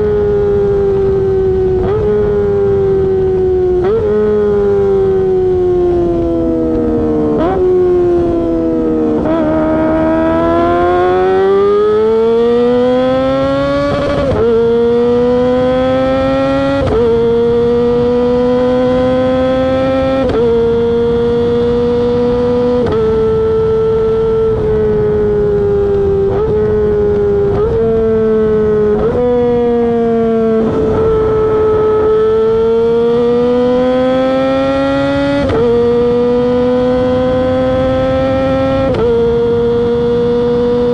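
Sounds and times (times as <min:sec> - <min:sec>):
high-revving motorcycle engine: 0:00.0 - 0:40.9.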